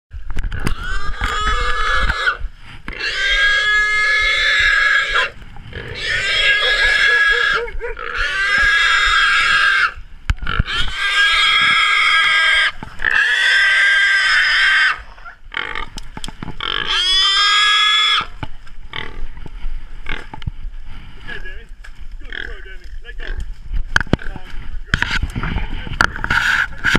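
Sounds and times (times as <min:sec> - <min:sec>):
hog squealing loudly: 0:03.0 - 0:10.0, 0:10.7 - 0:15.4, 0:16.6 - 0:18.3.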